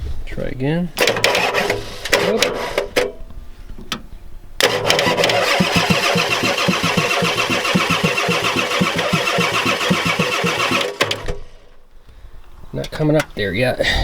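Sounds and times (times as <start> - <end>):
diesel engine cranking: 1.0 - 3.1, 4.6 - 11.9.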